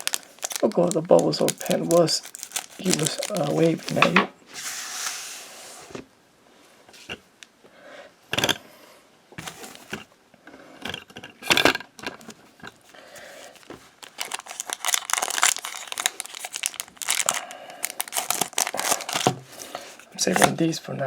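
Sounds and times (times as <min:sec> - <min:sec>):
foil wrapper tearing: 0:00.0 - 0:04.2, 0:12.9 - 0:20.5
foil crinkling: 0:00.0 - 0:05.3, 0:12.2 - 0:20.6.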